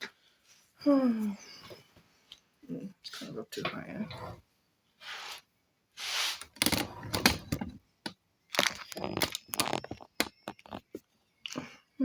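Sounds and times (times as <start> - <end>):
short breathy hiss: 6.0 - 6.4
small hard objects clicking: 8.0 - 11.6.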